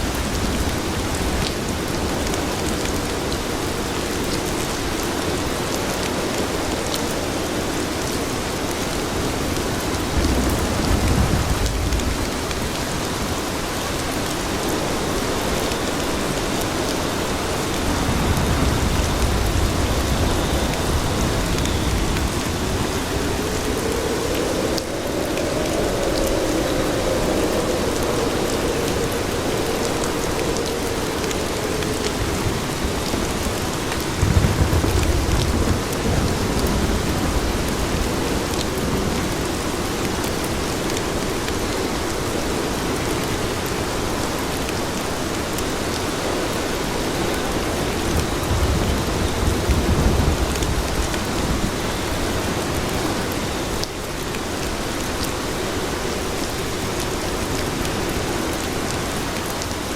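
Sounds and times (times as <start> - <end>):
heavy rain on pavement: 0.0 - 59.9
low rumble: 10.1 - 13.4, 18.0 - 39.4.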